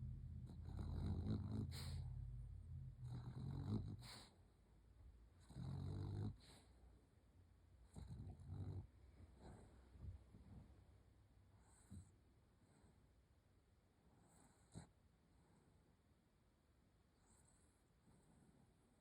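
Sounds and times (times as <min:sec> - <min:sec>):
dog snoring: 0:00.0 - 0:04.4, 0:05.3 - 0:06.8, 0:07.8 - 0:10.8, 0:11.6 - 0:13.0, 0:14.1 - 0:15.8, 0:17.2 - 0:19.0.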